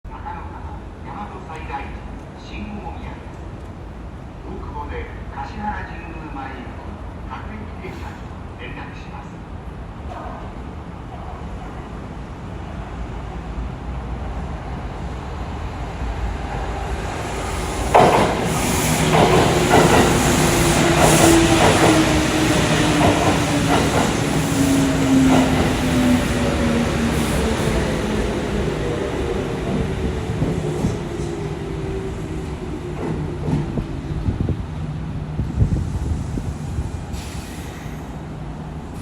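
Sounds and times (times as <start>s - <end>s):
electric train rumble: 12.1s - 39.0s.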